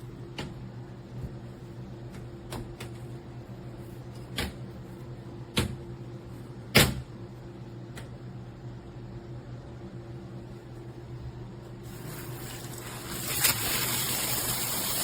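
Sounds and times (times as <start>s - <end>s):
steady low hum: 0.0s - 13.1s.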